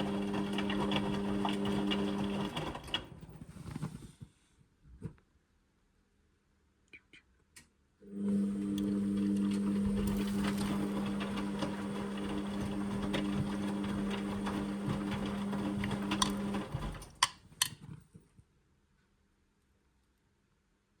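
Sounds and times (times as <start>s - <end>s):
washing machine running: 0.0s - 3.4s, 8.1s - 17.2s.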